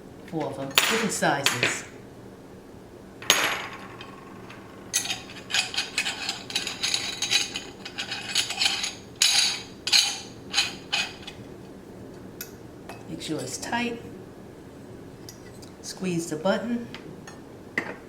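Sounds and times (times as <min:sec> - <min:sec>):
metal parts knocking: 0:03.2 - 0:11.4
ring screwing clicks and scrapes: 0:04.0 - 0:11.4.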